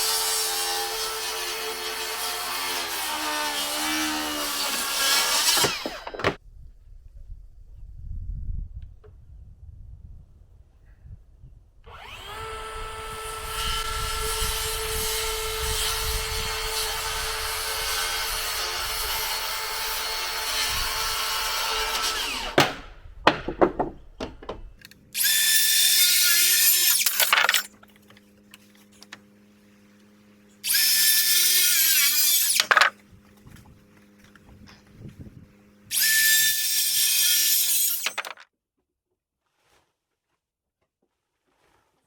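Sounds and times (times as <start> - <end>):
power drill driving screws: 4.4 - 6.4, 25.2 - 27.7, 35.9 - 38.4.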